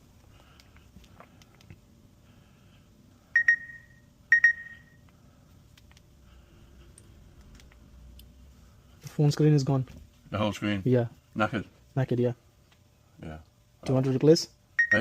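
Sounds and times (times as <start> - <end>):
high-pitched electronic beeps: 3.4 - 5.0, 14.8 - 15.0.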